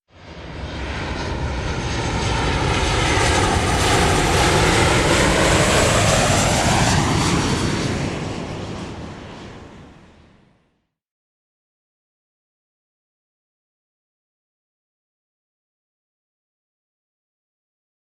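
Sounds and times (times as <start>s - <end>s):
propeller airplane flying past: 0.1s - 10.7s.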